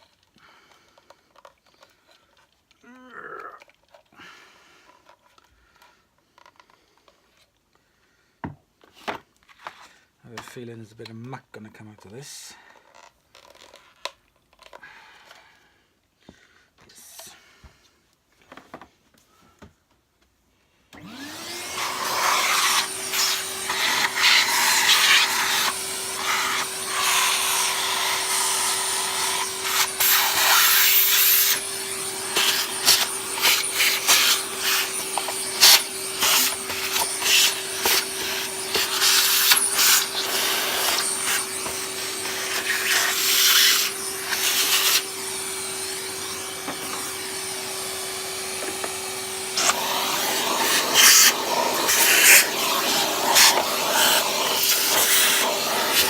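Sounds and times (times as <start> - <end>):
vacuum cleaner motor whine: 21.0 - 56.0.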